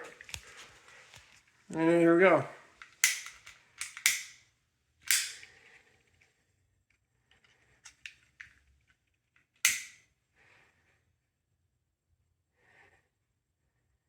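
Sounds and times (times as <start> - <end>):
lighter clicks: 3.0 - 4.4, 5.1 - 5.5, 9.6 - 10.0.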